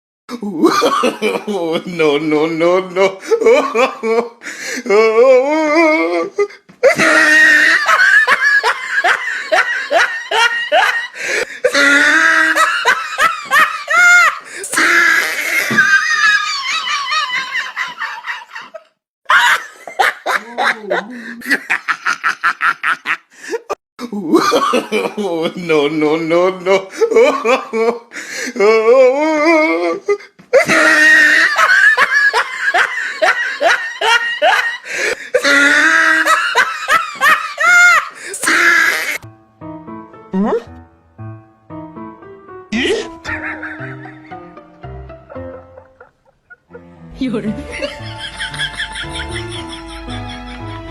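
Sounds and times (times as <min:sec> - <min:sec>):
person laughing: 0:03.0 - 0:25.5, 0:29.4 - 0:39.2, 0:42.8 - 0:44.5, 0:45.3 - 0:50.9.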